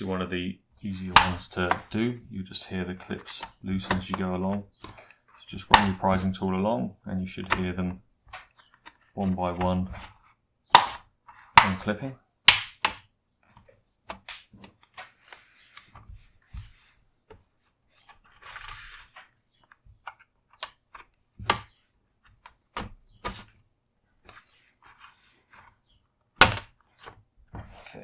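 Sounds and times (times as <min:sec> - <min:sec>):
plastic clips snapping loose: 0:05.7 - 0:06.1.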